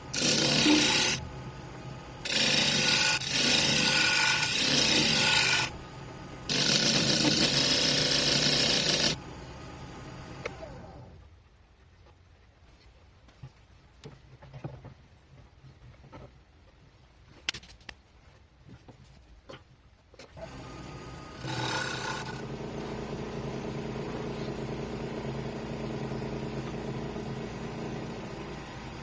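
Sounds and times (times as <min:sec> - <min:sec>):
lathe motor humming: 0:00.0 - 0:11.1, 0:20.4 - 0:29.0.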